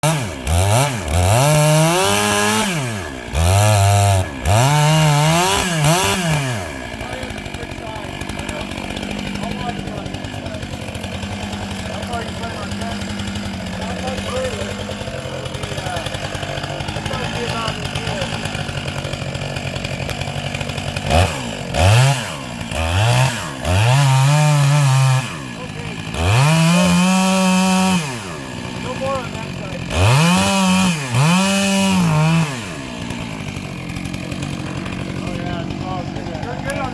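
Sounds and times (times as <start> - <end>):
chainsaw engine revving: 0.0 - 36.9.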